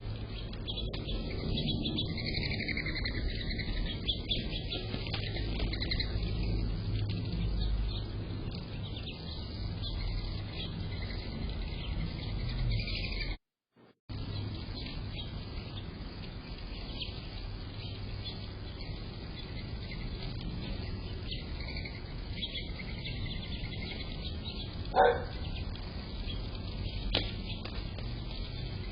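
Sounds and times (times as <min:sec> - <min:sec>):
birds chirping in a trill: 0:00.0 - 0:13.4, 0:14.1 - 0:28.9
low rumble: 0:00.0 - 0:13.4.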